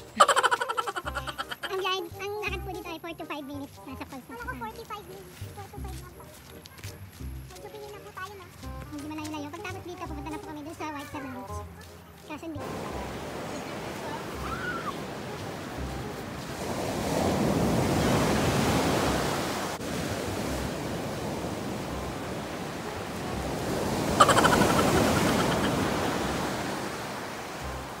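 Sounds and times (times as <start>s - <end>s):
ocean waves breaking on beach: 12.6s - 28.0s.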